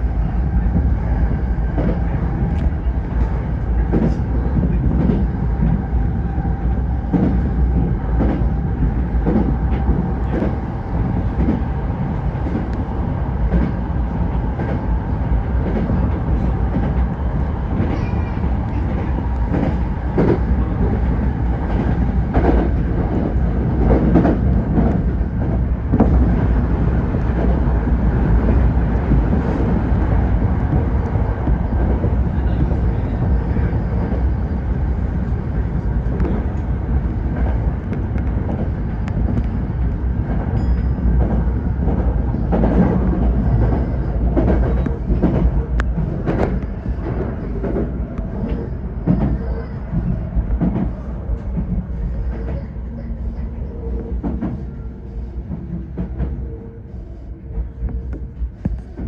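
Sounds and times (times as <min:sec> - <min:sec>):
train wheels rumbling on rails: 0:00.0 - 0:59.0.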